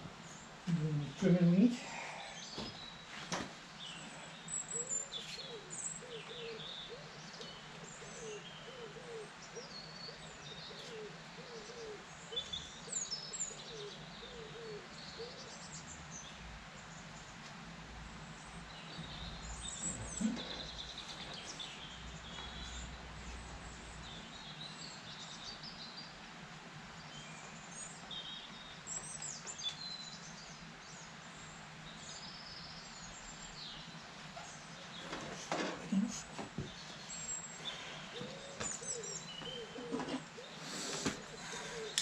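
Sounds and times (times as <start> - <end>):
steady low hiss: 0.0 - 42.0
birds chirping and singing: 3.7 - 17.2, 18.2 - 26.2, 31.9 - 42.0.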